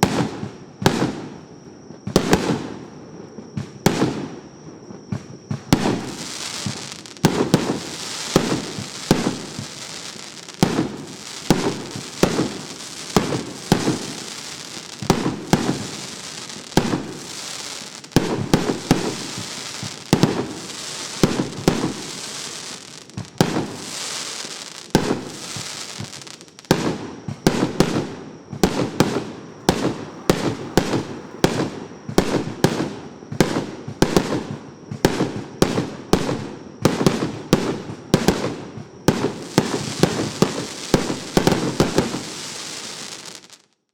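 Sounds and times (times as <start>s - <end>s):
hissing crackle of fireworks: 0.0s - 43.9s
fireworks launch and burst reports: 5.7s - 34.4s, 39.1s - 43.5s.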